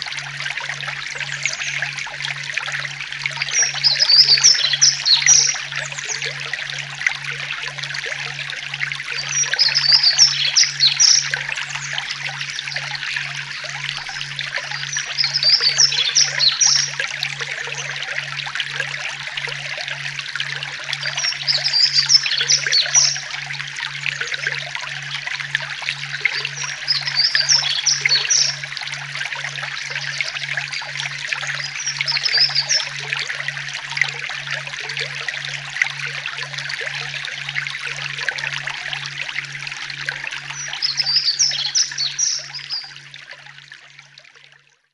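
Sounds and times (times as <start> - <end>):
low pulsing hum: 0.0 - 44.1
running water trickle: 0.0 - 44.9
high bird chirps: 3.5 - 5.6, 9.2 - 11.3, 14.8 - 17.0, 21.1 - 23.3, 40.6 - 42.9.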